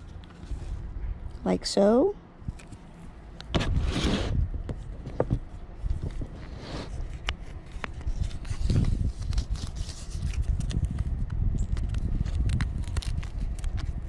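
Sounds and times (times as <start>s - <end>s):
velcro peeling apart: 7.1s - 11.0s, 11.7s - 14.0s.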